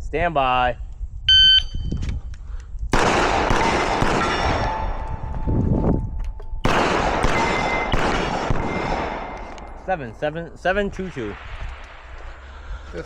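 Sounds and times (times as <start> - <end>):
pistol shots: 3.0 - 5.4, 6.6 - 12.4
steel plates ringing: 7.3 - 8.0.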